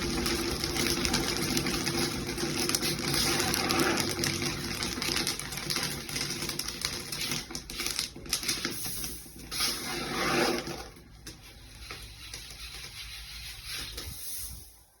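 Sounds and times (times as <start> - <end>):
dried peas popping and crackling: 0.0 - 9.7.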